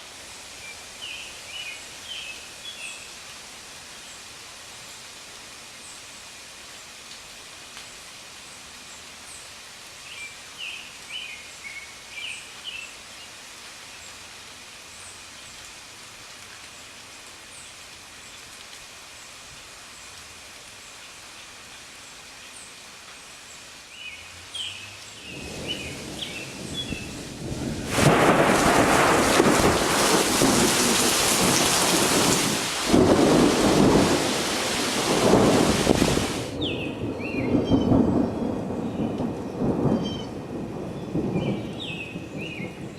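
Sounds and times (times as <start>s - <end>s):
steady rain: 0.0s - 42.9s
thunder rumbling: 25.3s - 42.9s.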